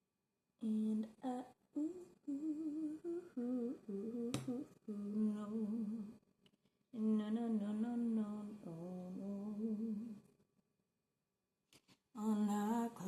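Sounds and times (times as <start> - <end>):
woman humming a melody: 0.6 - 6.2.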